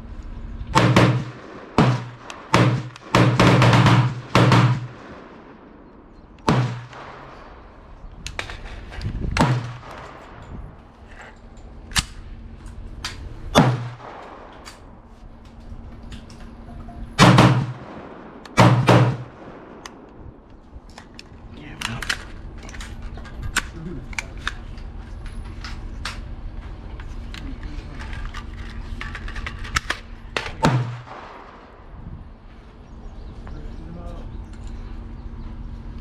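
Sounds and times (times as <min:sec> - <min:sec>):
gunshots with ringing echo: 0:00.8 - 0:08.1, 0:09.4 - 0:10.4, 0:13.5 - 0:15.0, 0:17.0 - 0:20.5, 0:30.5 - 0:32.0.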